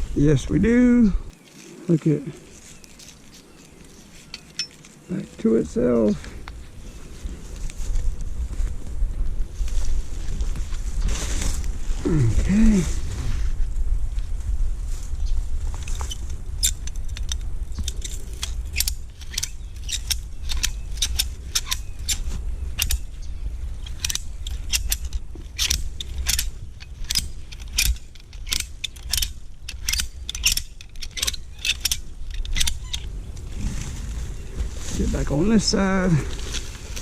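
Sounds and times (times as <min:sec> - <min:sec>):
wind rumble on microphone: 0:05.0 - 0:37.0
ratchet strap clicking: 0:15.8 - 0:33.1.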